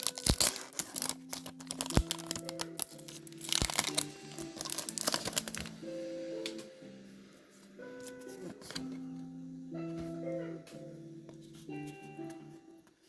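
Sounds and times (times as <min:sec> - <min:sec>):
foil wrapper crinkling and tearing: 0:00.0 - 0:05.8
soft background music: 0:00.0 - 0:13.0.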